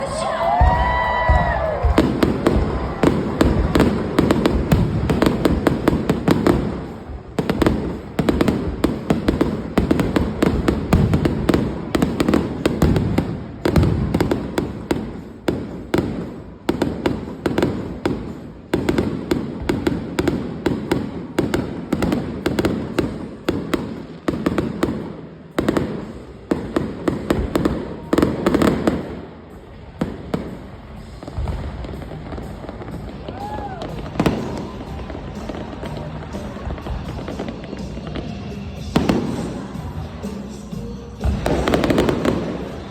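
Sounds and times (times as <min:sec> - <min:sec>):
fireworks bangs and crackling: 0:00.0 - 0:42.9.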